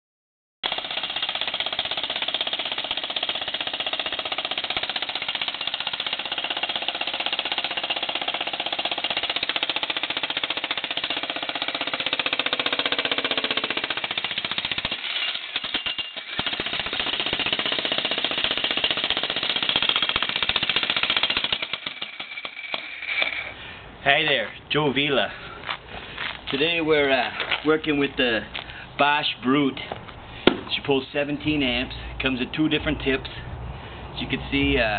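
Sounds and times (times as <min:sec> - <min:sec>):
electric breaker hammer on concrete: 0:00.6 - 0:23.6.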